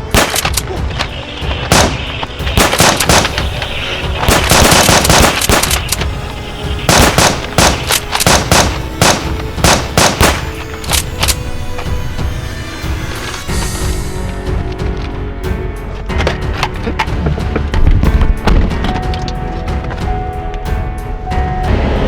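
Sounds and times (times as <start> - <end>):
gunshots: 0.0 - 11.4
background music: 0.0 - 22.0.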